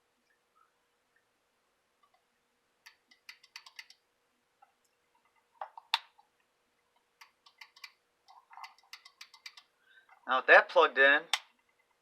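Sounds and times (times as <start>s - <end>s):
faint steady tone: 0.0s - 12.0s
small parts and tools clicking: 2.8s - 4.0s, 7.1s - 10.2s.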